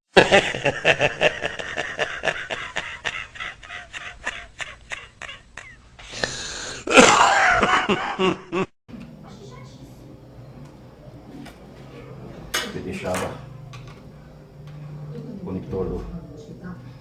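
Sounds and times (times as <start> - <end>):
man laughing: 0.2 - 6.2, 6.8 - 8.7
breathy hiss: 6.0 - 6.9.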